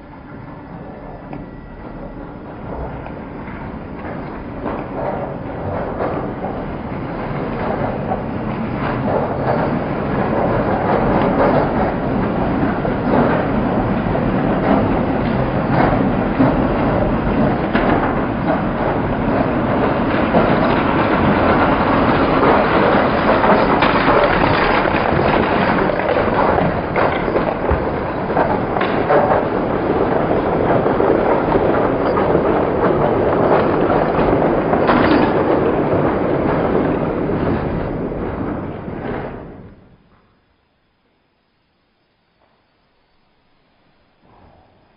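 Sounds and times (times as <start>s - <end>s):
train clattering along rails: 0.0s - 40.8s.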